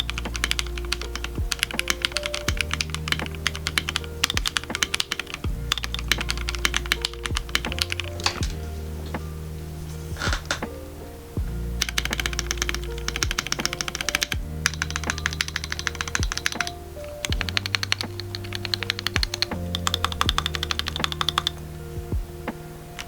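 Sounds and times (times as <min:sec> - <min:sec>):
fast typing on mechanical keyboard: 0:00.0 - 0:08.4, 0:11.8 - 0:21.6
background music with bass beat: 0:00.0 - 0:23.0.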